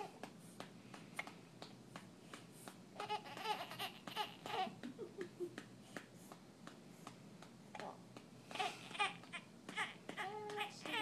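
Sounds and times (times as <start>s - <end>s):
infant cooing and babbling: 7.8s - 11.0s.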